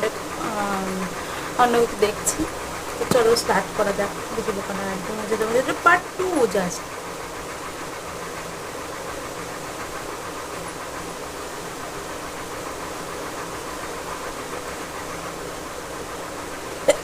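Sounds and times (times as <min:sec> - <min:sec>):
steady mechanical hum: 0:00.0 - 0:17.0.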